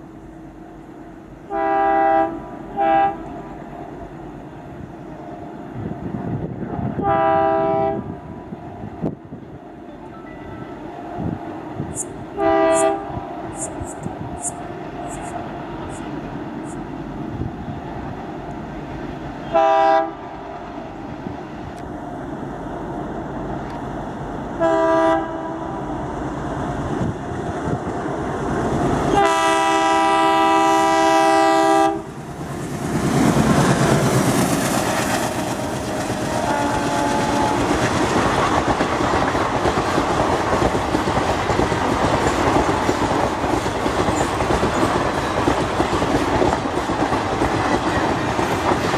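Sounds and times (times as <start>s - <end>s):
locomotive horn blasts: 1.5s - 3.3s, 7.0s - 8.1s, 12.0s - 13.7s, 19.4s - 20.2s, 24.6s - 25.7s, 29.1s - 32.1s, 36.3s - 37.8s
diesel locomotive engine chugging: 11.1s - 48.9s
wheels clacking over rail joints: 32.1s - 48.9s.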